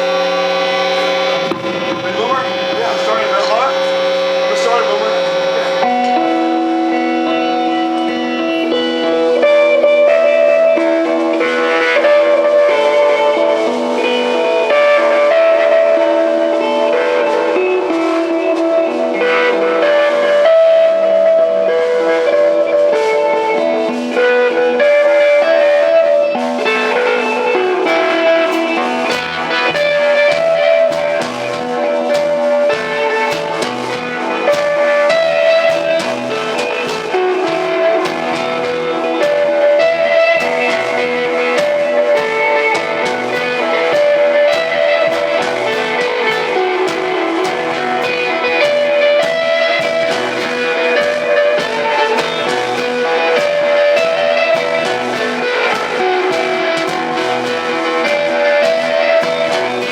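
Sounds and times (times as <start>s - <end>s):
cymbal hits: 0.0s - 8.3s
bass guitar: 0.0s - 59.9s
drums: 0.0s - 59.9s
electric guitar melody: 0.0s - 59.9s.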